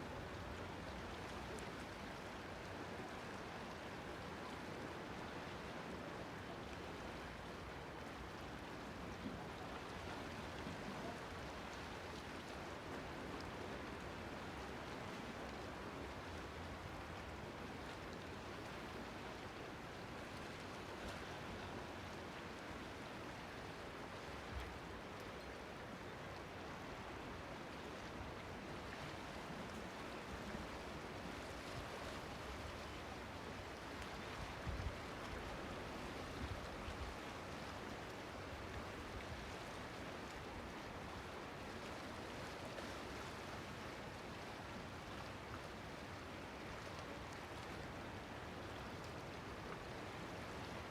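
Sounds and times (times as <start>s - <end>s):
waves lapping and surging: 0.0s - 50.9s.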